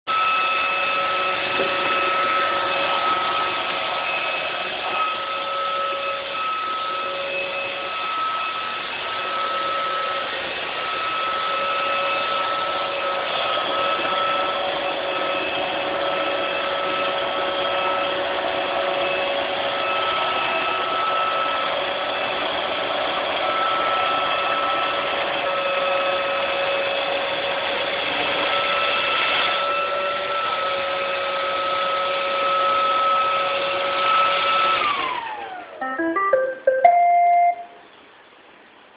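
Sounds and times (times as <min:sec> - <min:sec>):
robot vacuum motor whine: 0:00.1 - 0:25.5.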